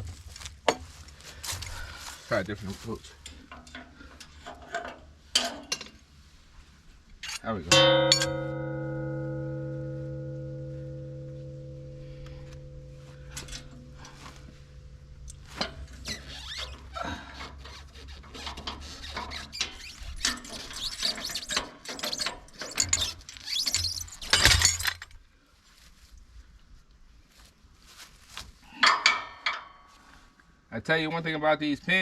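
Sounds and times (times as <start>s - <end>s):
ringing tone: 7.7s - 15.2s
steel pin squealing in hole: 15.8s - 25.0s.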